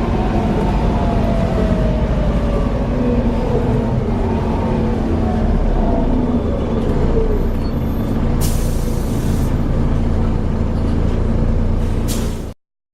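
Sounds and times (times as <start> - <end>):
bus engine hum and whine: 0.0 - 12.6
air brake hiss: 8.4 - 9.6, 11.8 - 12.6.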